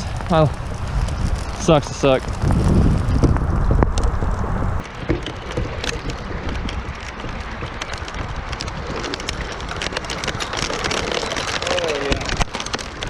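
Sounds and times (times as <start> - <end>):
rain drops tapping on kayak: 0.0 - 13.0
wind rumbling on microphone: 0.0 - 13.0.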